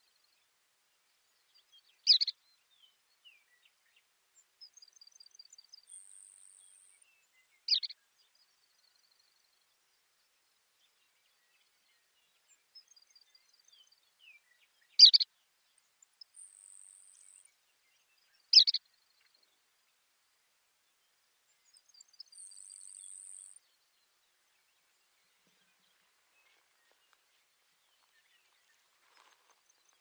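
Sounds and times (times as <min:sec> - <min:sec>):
sparrow singing: 0:01.5 - 0:04.0, 0:04.6 - 0:08.4, 0:11.3 - 0:19.4, 0:21.5 - 0:27.1.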